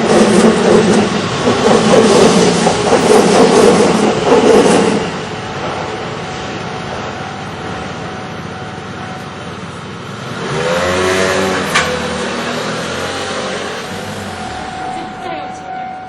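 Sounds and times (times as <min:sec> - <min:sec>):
traffic hum: 0:00.0 - 0:16.0
vehicle engine revving: 0:10.2 - 0:14.9.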